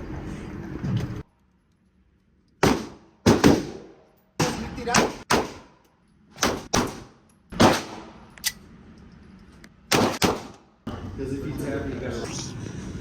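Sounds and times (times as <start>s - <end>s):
gunshots with ringing tail: 6.4s - 8.2s.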